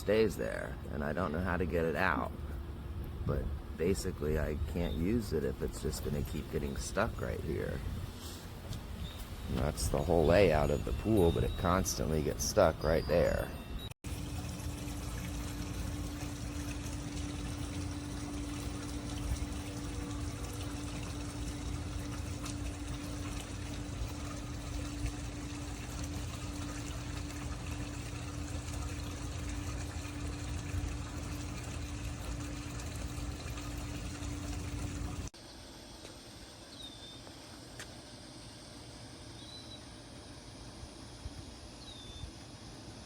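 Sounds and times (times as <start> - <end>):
pool pump humming: 0.0 - 43.0
pool water splashing: 14.1 - 35.3.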